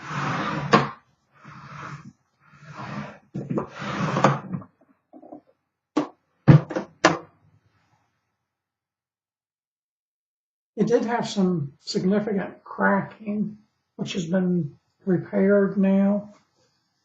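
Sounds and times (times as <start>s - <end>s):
case scraping and rubbing: 0.0s - 5.4s.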